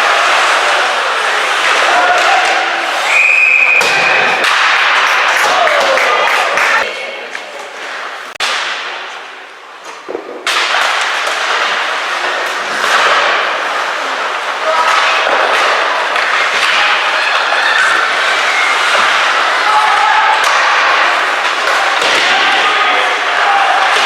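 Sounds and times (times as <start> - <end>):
hockey sticks and puck clacks: 0.0 - 24.0
noisy arena background: 0.0 - 24.0
whistle-like tone: 3.0 - 4.3.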